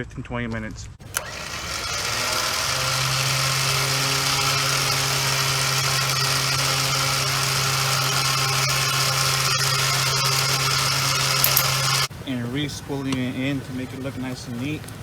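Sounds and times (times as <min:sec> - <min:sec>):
electric winch motor humming: 0:01.0 - 0:12.1.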